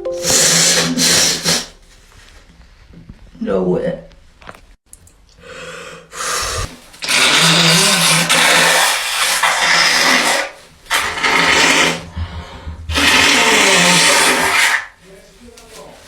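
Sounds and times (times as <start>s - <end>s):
person blowing nose: 0.1s - 1.8s, 5.6s - 15.0s.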